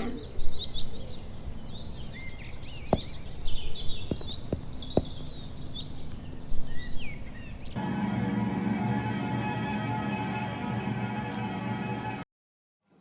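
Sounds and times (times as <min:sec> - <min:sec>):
songbirds chirping: 0:00.0 - 0:07.8
outdoor background hum: 0:00.0 - 0:07.9.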